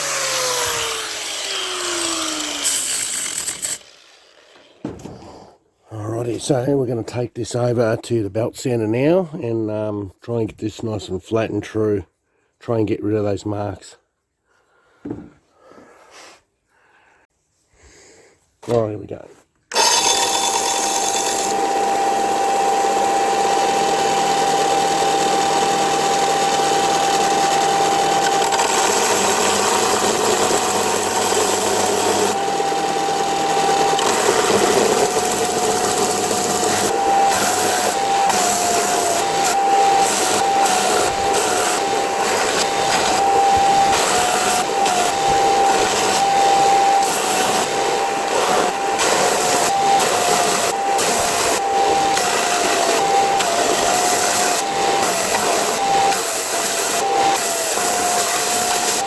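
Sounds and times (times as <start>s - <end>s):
belt sander grinding metal: 0.0s - 4.8s, 19.7s - 59.0s.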